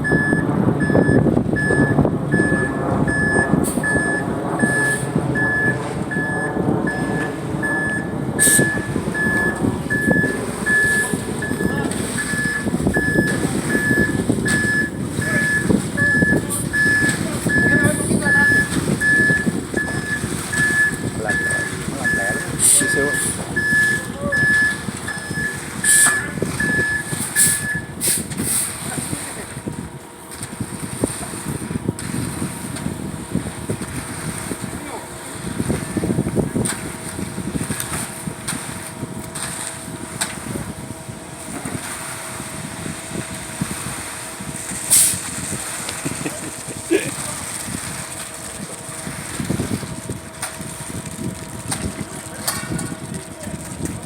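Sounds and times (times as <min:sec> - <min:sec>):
reversing alarm beeping: 0:00.0 - 0:28.0
truck engine running: 0:00.0 - 0:54.0.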